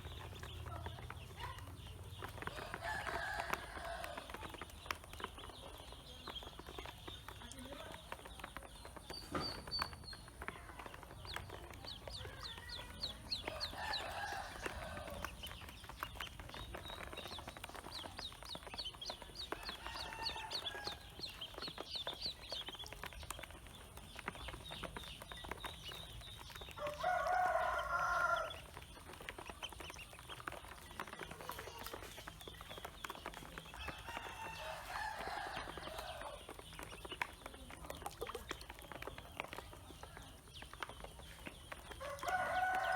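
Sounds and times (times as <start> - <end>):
ducklings peeping: 0.0 - 42.9
rooster crowing: 2.6 - 4.4, 13.5 - 15.2, 19.6 - 21.1, 26.8 - 28.6, 33.8 - 36.4, 42.0 - 42.9.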